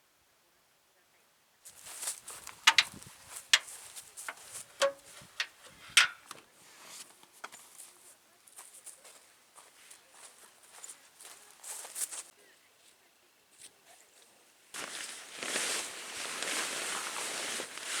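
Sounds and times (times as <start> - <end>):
sharp crunches and clicks: 1.8 - 6.4.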